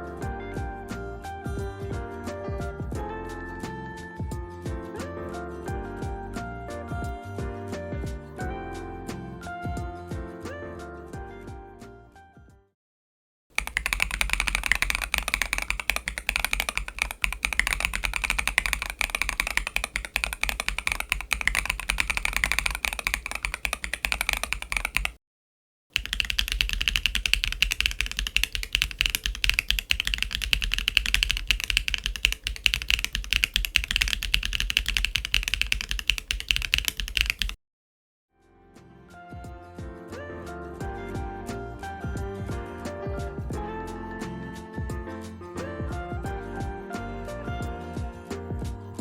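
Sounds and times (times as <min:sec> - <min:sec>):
mechanical keyboard typing: 0:13.6 - 0:25.2, 0:26.0 - 0:37.6.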